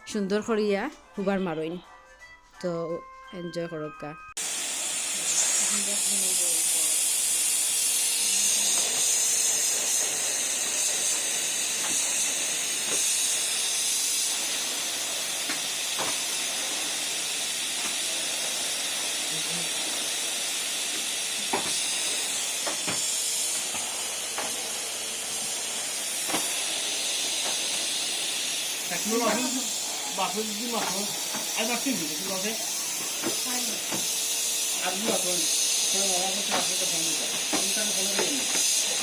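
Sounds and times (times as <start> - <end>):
vacuum cleaner suction hiss: 4.4 - 39.0.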